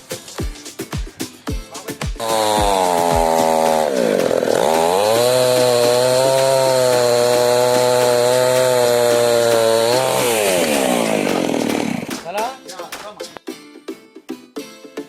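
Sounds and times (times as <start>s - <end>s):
chainsaw revving: 2.2s - 12.2s.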